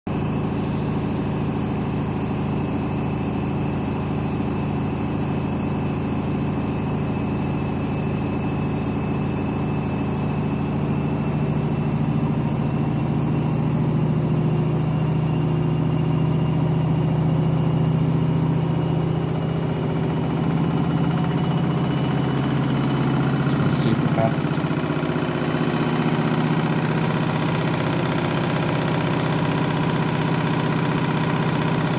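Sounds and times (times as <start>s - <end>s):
high motor whine: 0.1s - 31.9s
washing machine drum spinning: 0.1s - 31.9s
steady hum: 17.1s - 27.5s.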